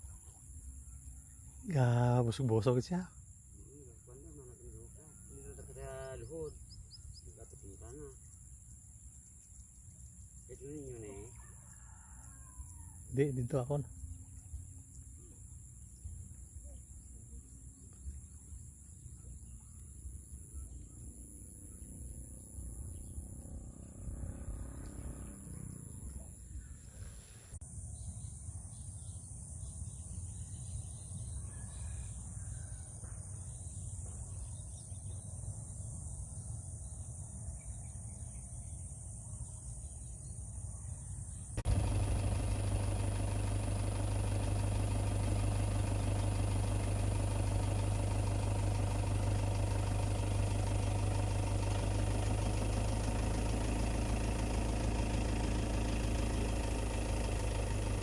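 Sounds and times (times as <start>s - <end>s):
engine running steadily: 19.2s - 27.6s, 41.6s - 58.0s
low rumble: 22.6s - 27.6s.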